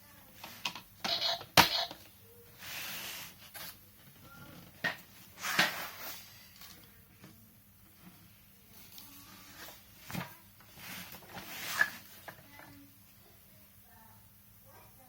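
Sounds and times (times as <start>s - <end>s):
rustling scrapes: 2.6s - 3.8s, 5.2s - 6.8s, 10.7s - 12.4s.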